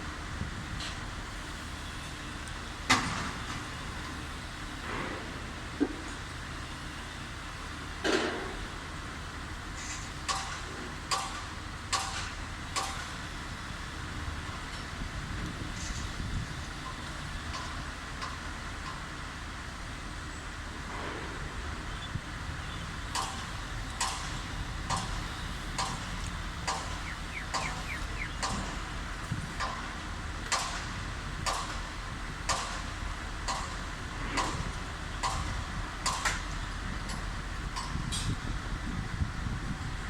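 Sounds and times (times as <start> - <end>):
wind rumble on microphone: 0.0 - 1.6, 13.5 - 17.6, 20.7 - 40.0.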